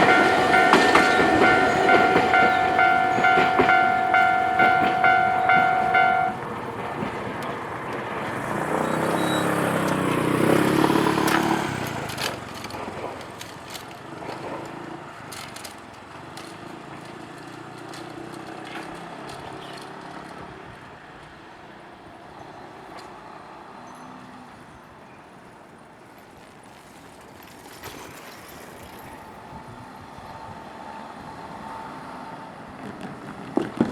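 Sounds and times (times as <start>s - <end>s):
cars passing: 0.0s - 26.5s.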